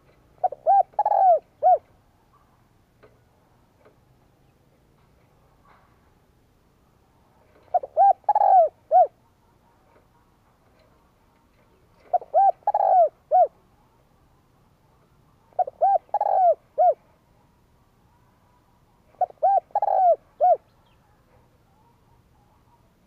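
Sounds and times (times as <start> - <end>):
dove cooing: 0.0 - 2.0, 7.3 - 10.9, 11.5 - 13.9, 15.3 - 17.2, 18.1 - 23.0.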